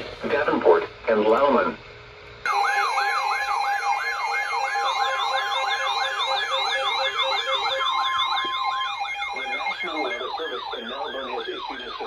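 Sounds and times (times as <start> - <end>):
electronic emergency alert tone: 2.5 - 12.0.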